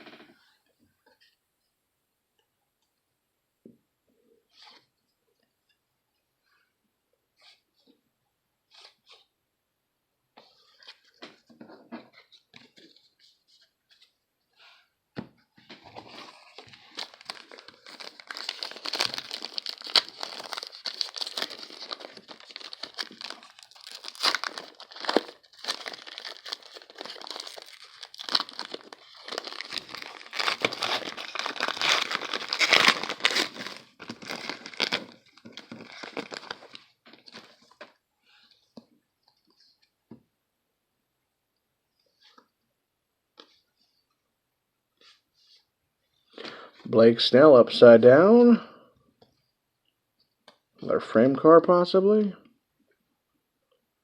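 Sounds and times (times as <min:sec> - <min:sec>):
foil wrapper crinkling: 0:16.2 - 0:37.7.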